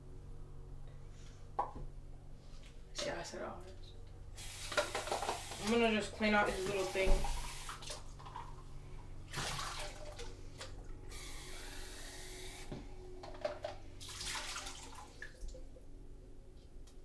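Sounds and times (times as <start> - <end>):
bathroom tap running: 4.4 - 8.7, 9.3 - 10.4, 14.0 - 15.7
water splashing: 9.3 - 10.7, 14.0 - 15.6.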